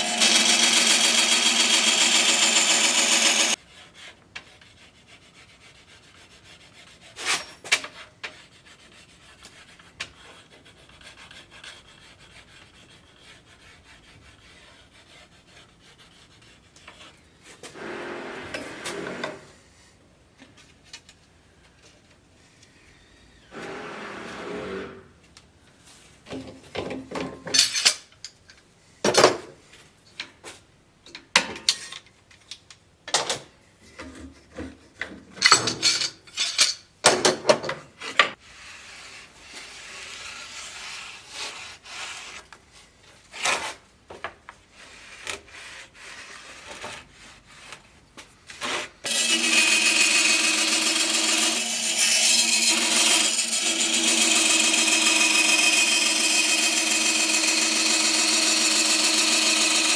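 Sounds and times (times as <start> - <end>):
hand tool rasping on wood: 0.0 - 3.6, 49.1 - 59.9.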